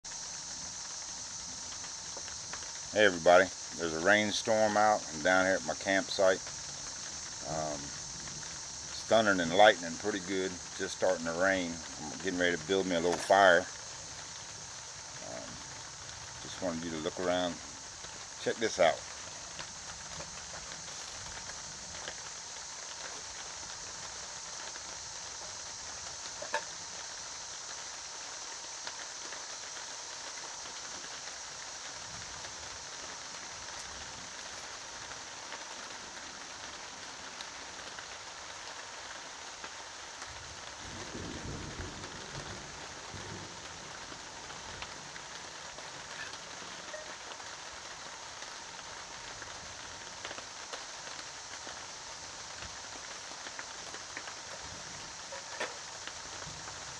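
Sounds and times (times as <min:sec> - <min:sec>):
steady rain hiss: 0:00.0 - 0:56.9.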